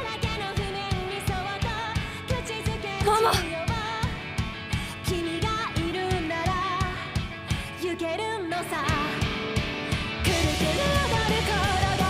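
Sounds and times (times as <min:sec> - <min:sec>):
person singing with vibrato: 0:00.0 - 0:04.2, 0:10.2 - 0:12.0
guitar: 0:00.0 - 0:12.0.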